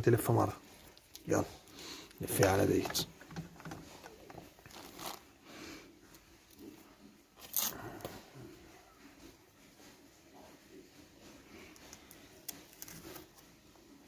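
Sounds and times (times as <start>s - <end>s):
electrical tape rustling and crackling: 0.6s - 5.4s, 10.9s - 13.7s.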